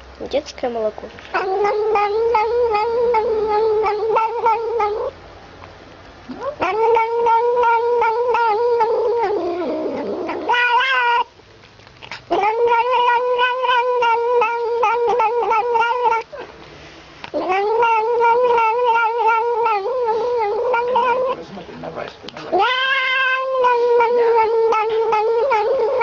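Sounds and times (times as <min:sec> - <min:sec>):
cat warbling cries: 0:01.4 - 0:05.2, 0:06.3 - 0:11.4, 0:12.3 - 0:16.5, 0:17.3 - 0:21.4, 0:22.5 - 0:26.0
cat higher-pitched call: 0:06.4 - 0:11.3, 0:12.3 - 0:16.4, 0:17.4 - 0:21.4, 0:22.5 - 0:26.0.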